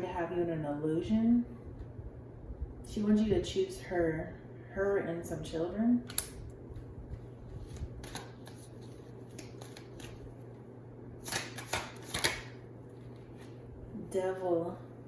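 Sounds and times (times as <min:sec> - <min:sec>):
low steady hum: 0:00.0 - 0:15.0
cards rustling: 0:07.1 - 0:10.5, 0:11.2 - 0:13.6
cards sliding and flicking: 0:07.5 - 0:10.3, 0:11.2 - 0:12.6.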